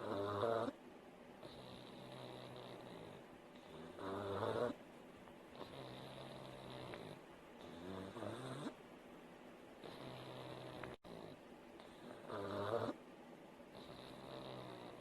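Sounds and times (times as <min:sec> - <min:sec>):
dog snoring: 0:00.0 - 0:00.8, 0:01.4 - 0:04.8, 0:05.5 - 0:08.8, 0:09.8 - 0:13.0, 0:13.7 - 0:15.0.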